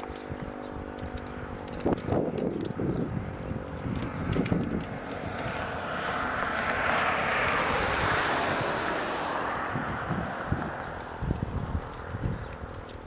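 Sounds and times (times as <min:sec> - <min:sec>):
vehicle passing by: 0:03.1 - 0:13.0.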